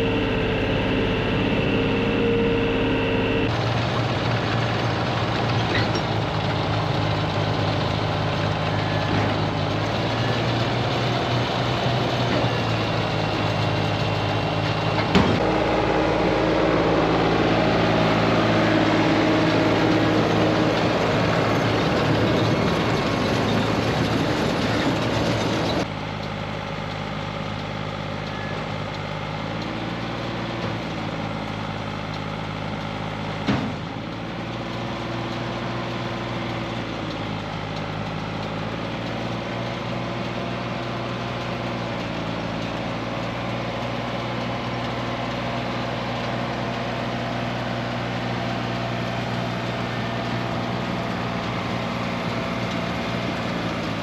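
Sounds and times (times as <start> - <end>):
tractor engine running: 0.0 - 54.0.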